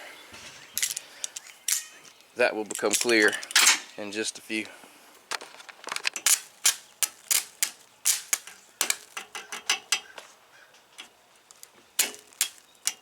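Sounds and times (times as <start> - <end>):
metal tools clinking: 0.8 - 4.0.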